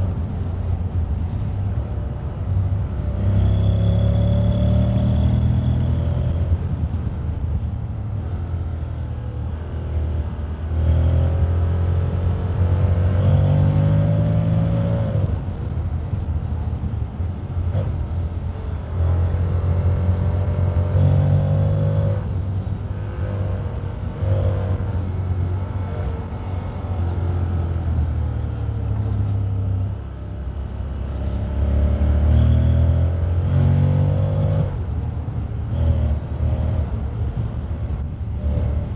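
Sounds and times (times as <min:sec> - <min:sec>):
motorcycle engine revving: 0:02.6 - 0:06.8, 0:09.5 - 0:15.5, 0:17.3 - 0:34.9, 0:35.6 - 0:38.9.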